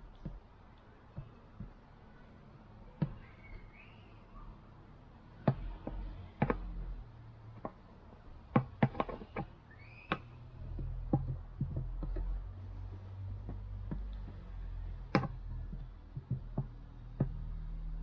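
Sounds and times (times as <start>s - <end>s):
knocks and clicks of tools: 5.4s - 17.6s.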